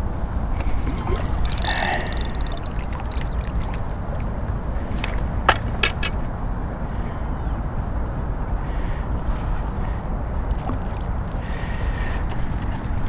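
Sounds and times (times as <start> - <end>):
water splashing and trickling: 0.4 - 6.3, 10.3 - 13.0.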